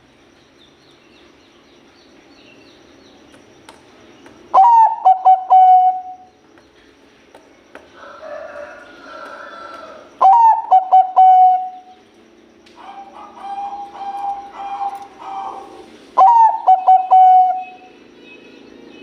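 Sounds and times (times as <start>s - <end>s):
dove cooing: 4.5s - 6.3s, 9.5s - 12.0s, 12.8s - 17.9s.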